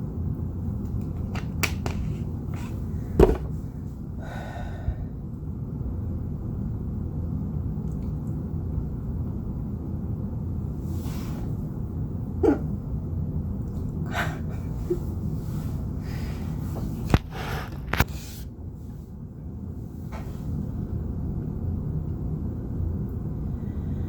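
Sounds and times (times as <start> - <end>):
person hiccuping: 12.4 - 12.7.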